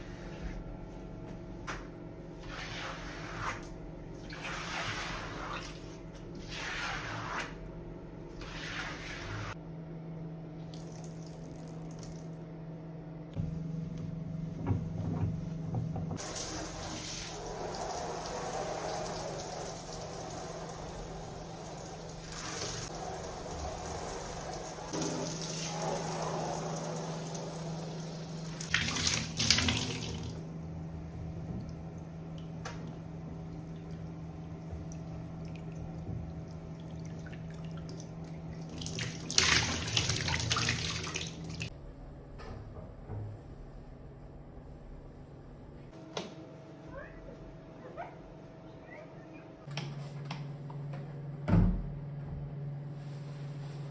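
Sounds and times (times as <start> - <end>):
low steady hum: 0.0 - 53.9
tap water running into sink: 28.4 - 30.4.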